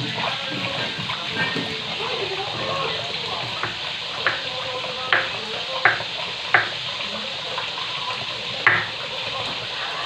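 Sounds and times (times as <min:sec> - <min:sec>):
tap water running: 0:00.0 - 0:10.0
sharp knocks: 0:05.1 - 0:06.7, 0:08.7 - 0:08.9.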